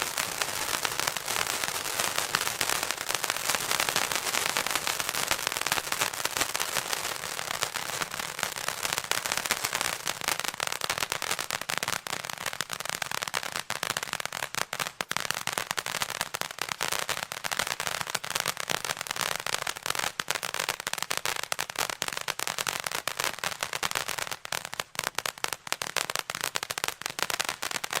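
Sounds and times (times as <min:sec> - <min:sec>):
firework hiss: 0:00.0 - 0:10.4
firework fountain crackling: 0:00.0 - 0:28.0.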